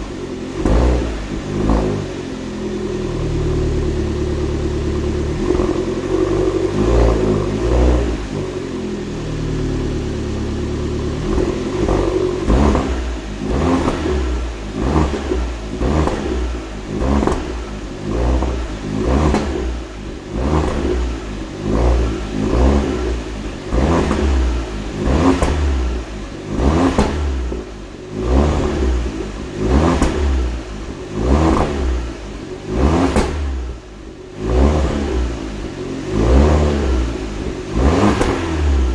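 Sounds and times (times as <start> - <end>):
car engine revving: 0.0 - 38.9.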